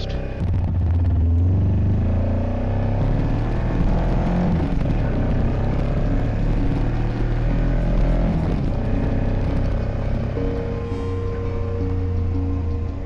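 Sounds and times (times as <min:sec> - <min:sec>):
motorcycle engine drone: 0:00.0 - 0:13.0.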